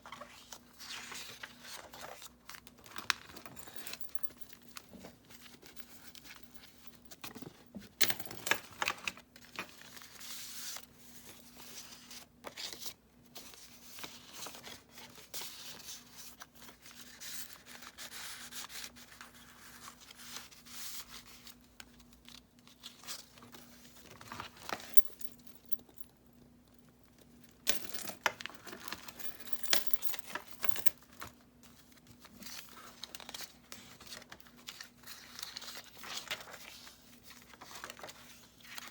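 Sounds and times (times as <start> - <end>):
paper pages rustling: 0.0 - 3.4, 31.1 - 38.9.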